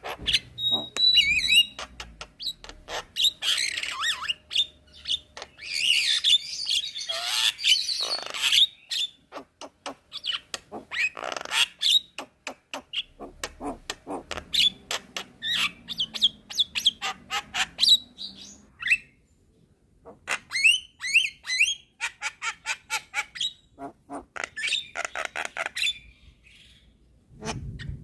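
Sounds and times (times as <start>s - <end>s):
myna singing clicks and chirps: 0.0s - 18.7s.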